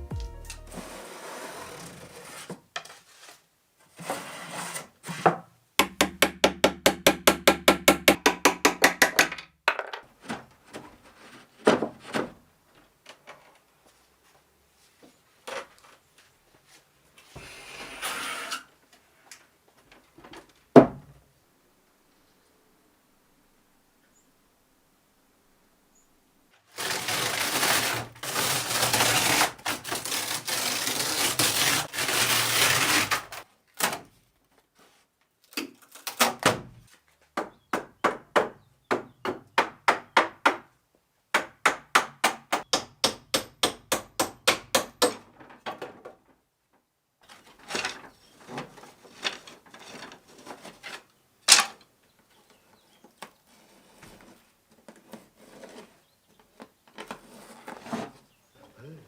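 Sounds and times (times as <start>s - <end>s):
rough rubbing on wood: 26.8s - 33.4s.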